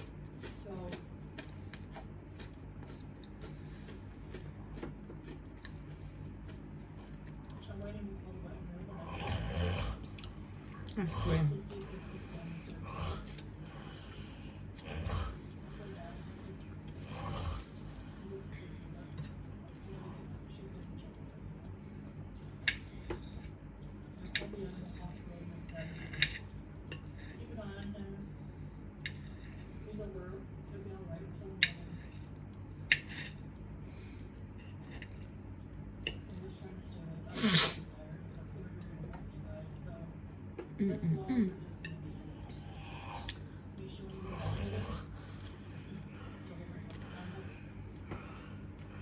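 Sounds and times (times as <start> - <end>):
person chewing: 0.0 - 7.6
food chewing mouth sounds: 0.0 - 7.9, 8.9 - 27.4, 41.8 - 49.0
steady low hum: 0.0 - 49.0.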